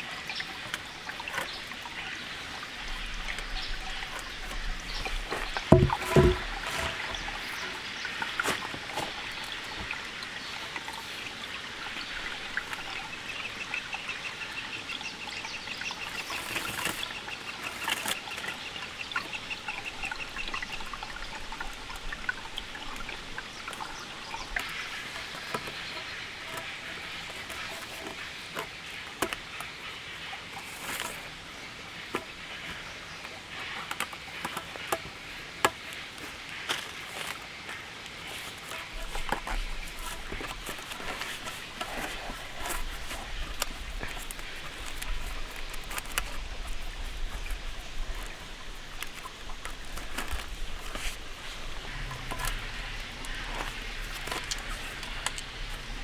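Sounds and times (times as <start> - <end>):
rain falling and dripping: 0.0 - 56.0.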